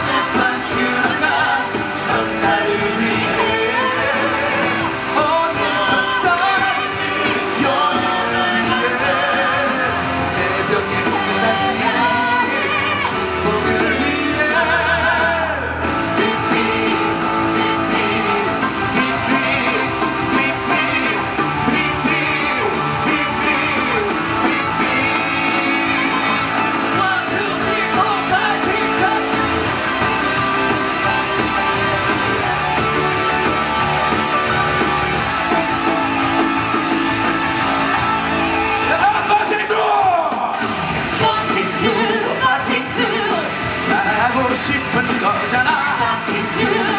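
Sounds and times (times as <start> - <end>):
rock song sung live with guitar: 0.0 - 46.9.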